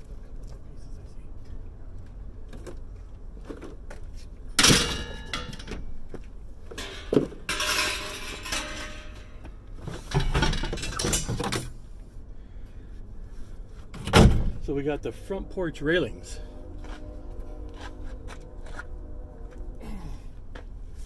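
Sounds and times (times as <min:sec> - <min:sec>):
metal railing scraping: 0:06.7 - 0:11.6, 0:14.6 - 0:21.0
scrap metal clanking: 0:06.7 - 0:11.7.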